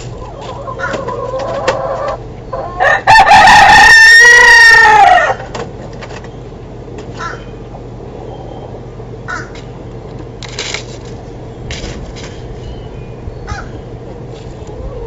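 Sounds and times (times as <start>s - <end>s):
steady low hum: 0.0s - 3.9s, 4.6s - 15.0s
harsh bird calls: 6.2s - 9.8s, 11.5s - 15.0s.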